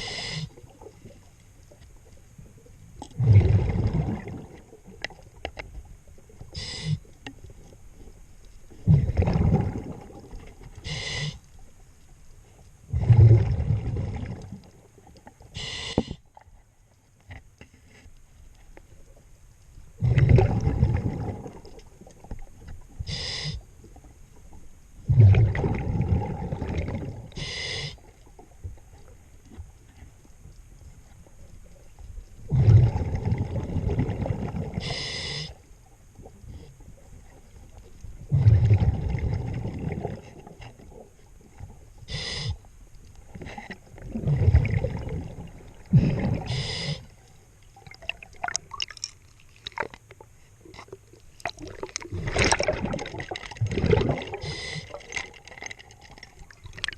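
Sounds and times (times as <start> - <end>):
bubbling exhalations underwater: 3.0 - 4.9, 8.8 - 11.3, 12.9 - 14.7, 20.0 - 21.8, 25.0 - 27.5, 32.5 - 34.9, 38.2 - 41.0, 44.0 - 47.1, 47.8 - 50.0, 50.7 - 56.9
hissing regulator inhalations: 34.8 - 35.6, 42.1 - 42.6, 46.4 - 47.2, 54.3 - 55.0.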